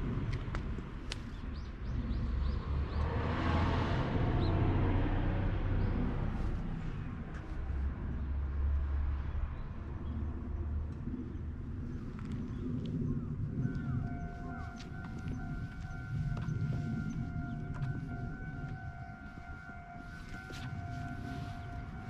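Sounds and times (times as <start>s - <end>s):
steady low rumble: 0.0s - 22.0s
vehicle passing by: 2.0s - 9.6s.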